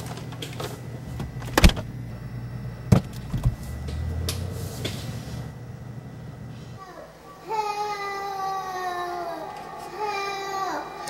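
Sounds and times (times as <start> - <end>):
low steady hum: 0.0 - 11.0
refrigerator door banging: 1.2 - 2.0, 2.9 - 3.6
knocks and thumps: 2.9 - 4.1.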